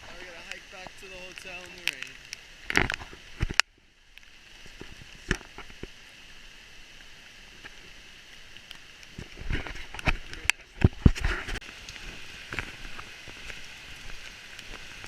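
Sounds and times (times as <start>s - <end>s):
rain pouring: 0.0s - 15.0s.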